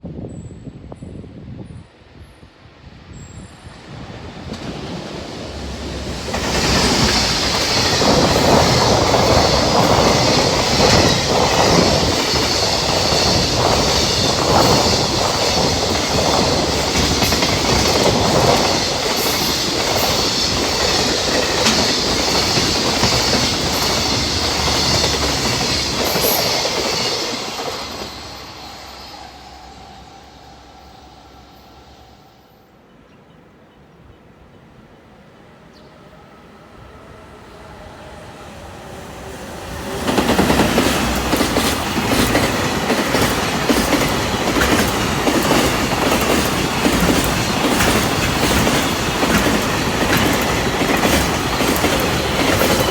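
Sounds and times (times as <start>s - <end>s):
freight train passing: 0.0s - 52.9s
wagon wheels clattering over rail joints: 40.2s - 52.9s.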